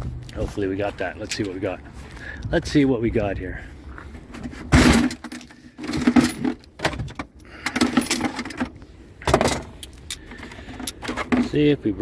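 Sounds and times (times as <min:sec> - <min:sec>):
metal nuts and bolts clinking: 0:01.2 - 0:01.6, 0:04.7 - 0:11.7.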